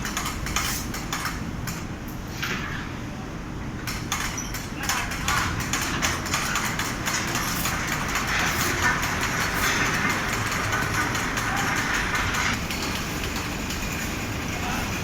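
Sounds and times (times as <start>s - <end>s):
fabric spreading machine running: 4.8s - 15.0s.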